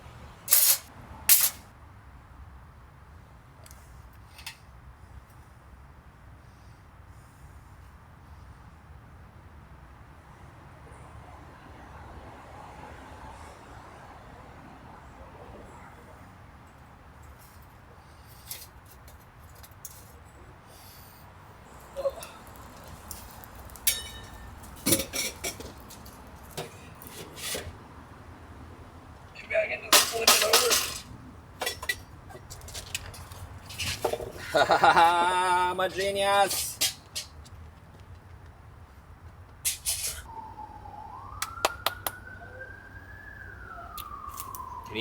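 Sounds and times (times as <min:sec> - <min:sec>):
metal stove parts clinking: 0:00.5 - 0:01.6, 0:23.8 - 0:27.7, 0:29.9 - 0:35.1, 0:36.0 - 0:37.4
emergency vehicle siren wailing: 0:40.2 - 0:45.0.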